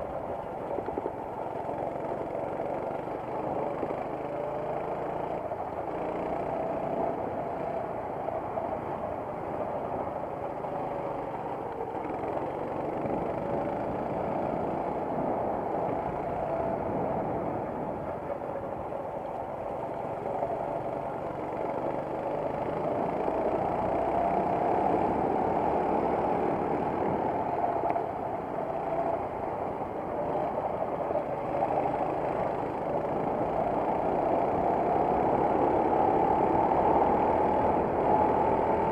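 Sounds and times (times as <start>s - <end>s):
kart engine running flat out: 20.0s - 38.9s.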